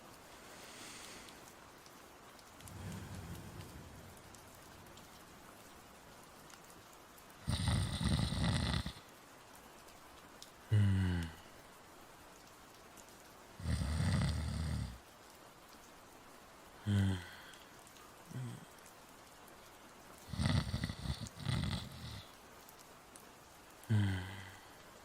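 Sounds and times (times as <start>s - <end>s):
steady rain: 0.0s - 25.0s
low grunting breaths: 2.6s - 4.8s
person snoring: 7.4s - 9.0s, 13.6s - 15.0s, 16.9s - 17.4s, 20.3s - 22.3s, 23.9s - 24.6s.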